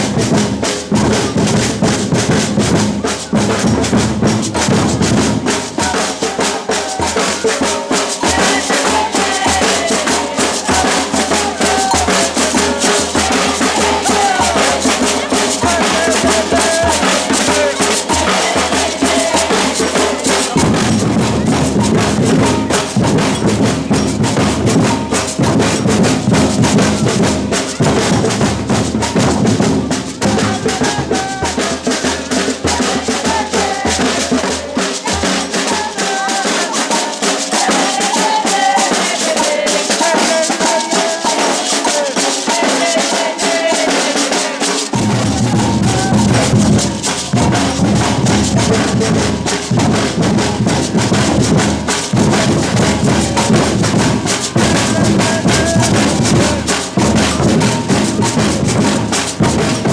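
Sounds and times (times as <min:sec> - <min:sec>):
deep drums: 0:00.0 - 0:35.3, 0:45.0 - 0:59.9
samba percussion ensemble: 0:00.0 - 0:59.9.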